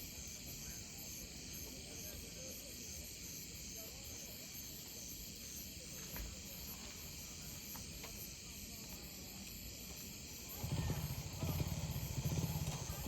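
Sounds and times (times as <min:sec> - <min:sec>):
crickets chirping: 0:00.0 - 0:13.0.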